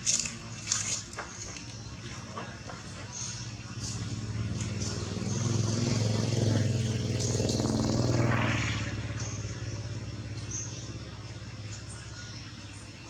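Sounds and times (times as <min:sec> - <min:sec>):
vehicle engine passing by: 0:02.8 - 0:13.0.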